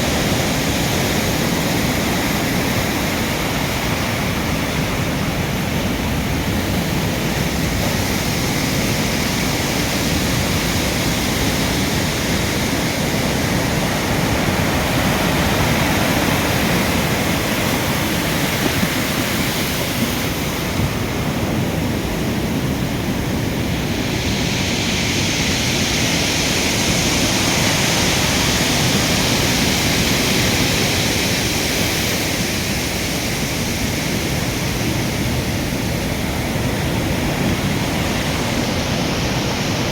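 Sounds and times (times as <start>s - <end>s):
surf breaking and washing: 0.0s - 39.9s.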